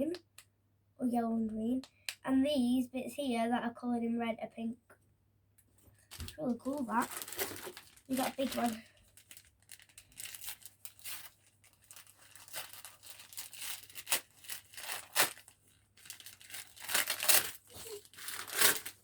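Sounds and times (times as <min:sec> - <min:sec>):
wrapping paper tearing and crinkling: 0:06.1 - 0:19.0.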